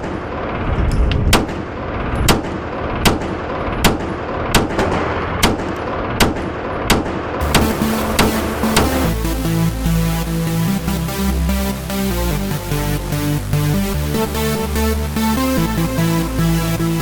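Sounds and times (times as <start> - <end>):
background din: 7.4 - 17.0
music: 7.4 - 17.0.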